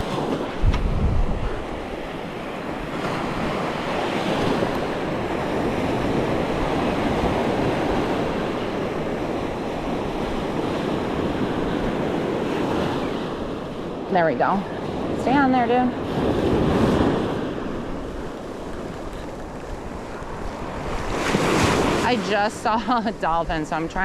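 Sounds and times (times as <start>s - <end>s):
wind buffeting microphone: 0.0s - 24.0s
surf washing onto beach: 14.8s - 24.0s.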